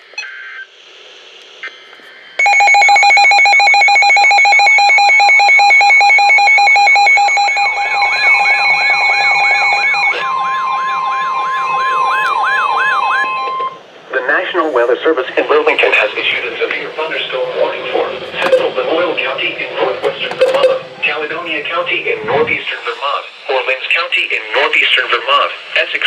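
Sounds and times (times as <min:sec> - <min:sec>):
pulsed alarm beeping: 0:02.4 - 0:22.5
steady alarm tone: 0:02.4 - 0:24.1
rising and falling warble: 0:05.8 - 0:22.9.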